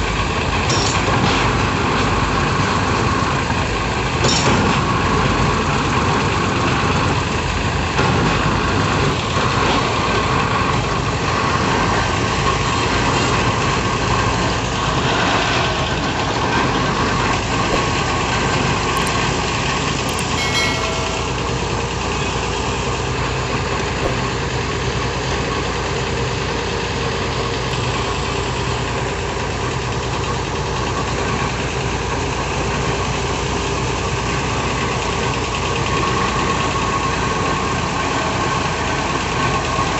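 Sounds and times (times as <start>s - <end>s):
diesel engine running: 0.0s - 39.9s
metal clank: 0.7s - 1.4s, 4.3s - 4.8s, 17.7s - 22.6s, 24.0s - 24.4s.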